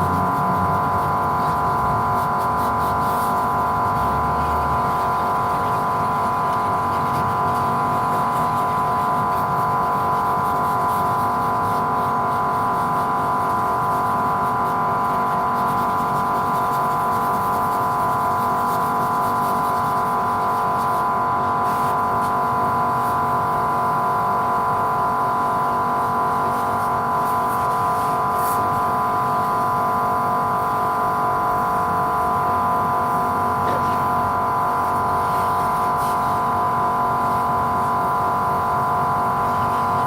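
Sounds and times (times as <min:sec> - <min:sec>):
machine whining with hum: 0:00.0 - 0:16.1.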